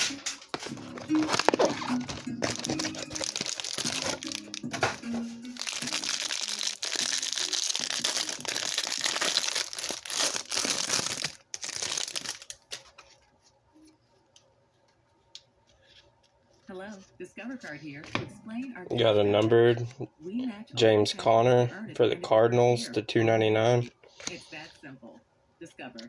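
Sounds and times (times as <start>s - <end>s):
cardboard and plastic tearing: 0.0s - 5.0s, 5.6s - 13.1s.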